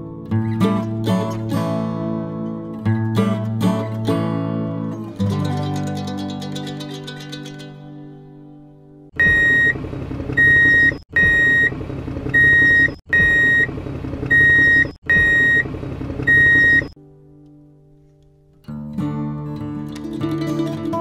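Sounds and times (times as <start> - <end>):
plucked guitar note: 0.0 - 9.1, 17.0 - 21.0
electronic beep-beep: 9.2 - 9.8, 10.4 - 11.7, 12.4 - 13.7, 14.3 - 15.6, 16.3 - 17.0.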